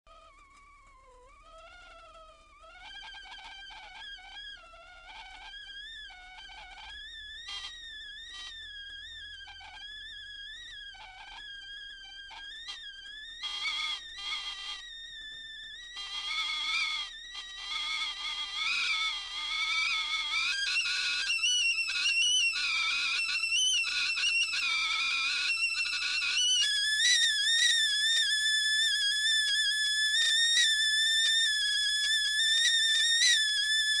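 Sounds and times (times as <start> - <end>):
kettle whistling: 16.0 - 34.0.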